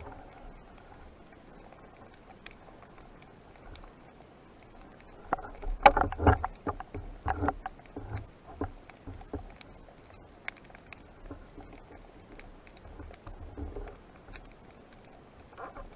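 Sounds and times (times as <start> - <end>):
water splashing and knocking: 5.7 - 9.5.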